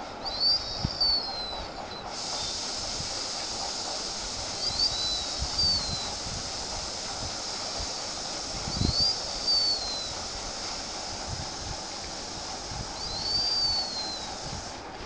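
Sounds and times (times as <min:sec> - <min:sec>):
whistling snore: 0:00.3 - 0:02.6, 0:04.5 - 0:06.2, 0:08.5 - 0:10.2, 0:12.6 - 0:14.4.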